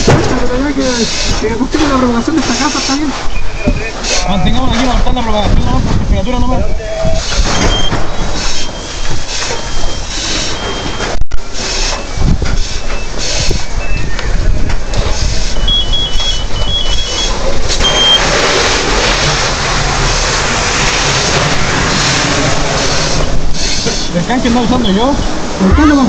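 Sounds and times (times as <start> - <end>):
fire engine running: 7.2 - 26.0
two-tone beeping: 7.4 - 15.0, 15.6 - 18.3, 24.5 - 25.2
short high electronic beeps: 15.6 - 18.2.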